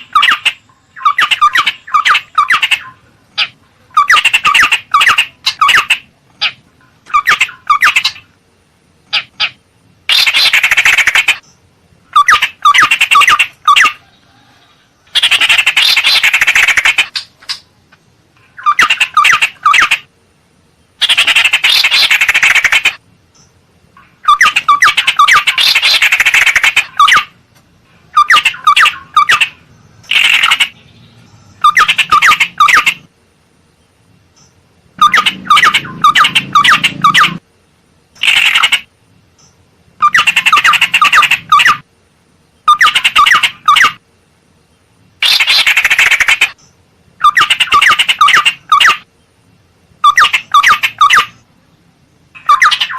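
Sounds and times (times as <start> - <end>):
bird harsh chattering: 0.0 - 8.3, 9.1 - 11.4, 12.1 - 14.0, 15.1 - 17.6, 18.6 - 20.1, 21.0 - 23.0, 24.2 - 27.4, 28.1 - 30.8, 31.6 - 33.1, 35.0 - 37.4, 38.2 - 38.9, 40.0 - 41.8, 42.6 - 44.0, 45.2 - 46.6, 47.2 - 49.1, 50.0 - 51.4, 52.4 - 52.9
bird calling rising notes: 28.1 - 33.1, 35.0 - 37.4, 40.0 - 41.9, 52.4 - 52.9
bird calling hooked notes: 34.4 - 37.4.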